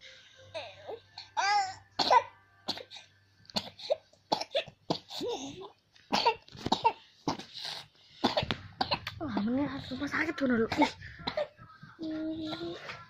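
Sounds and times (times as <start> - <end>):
child coughing: 2.0 - 9.2, 10.6 - 11.6.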